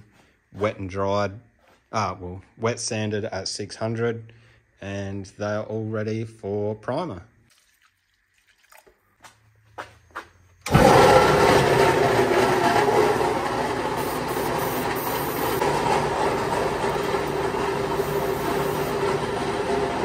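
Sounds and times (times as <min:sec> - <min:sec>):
machine running loudly: 0:10.7 - 0:20.0.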